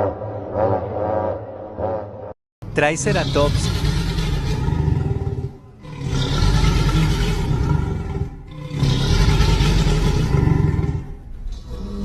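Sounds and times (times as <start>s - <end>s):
deep rumbling dinosaur roars: 3.0s - 12.0s.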